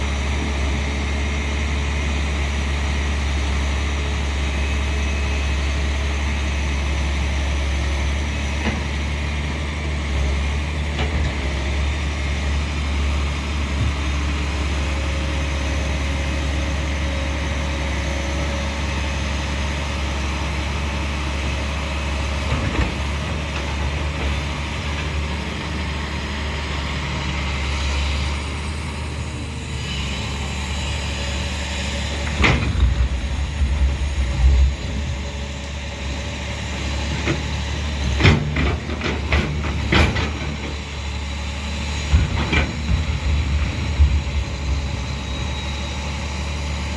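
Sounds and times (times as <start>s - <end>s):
excavator diesel engine humming: 0.0s - 46.9s.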